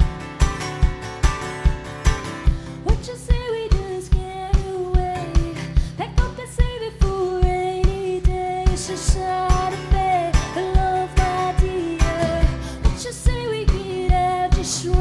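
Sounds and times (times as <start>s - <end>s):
live band music: 0.0s - 3.1s
guitar: 0.0s - 15.0s
woman singing: 2.4s - 15.0s.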